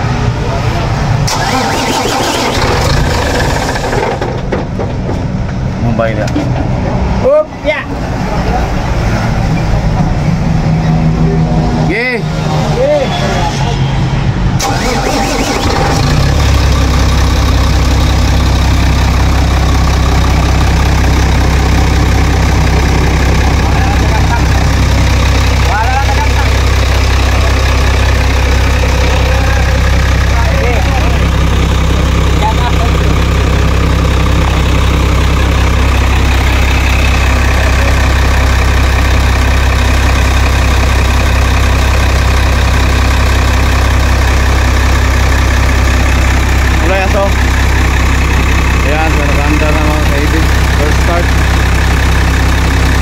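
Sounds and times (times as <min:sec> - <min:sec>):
diesel truck engine idling: 0:00.0 - 0:53.0.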